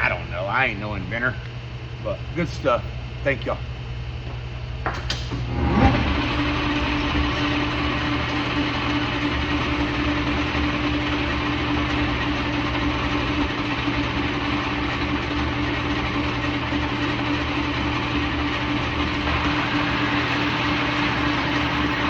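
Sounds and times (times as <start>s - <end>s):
lathe running with a hum: 0.0s - 22.0s.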